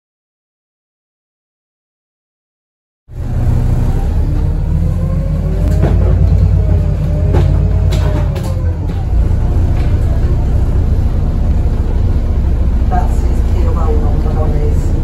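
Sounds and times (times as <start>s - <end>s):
bus engine rumbling: 3.1s - 15.0s
turbocharger whine: 3.1s - 15.0s
sharp rattles and knocks: 5.7s - 8.7s.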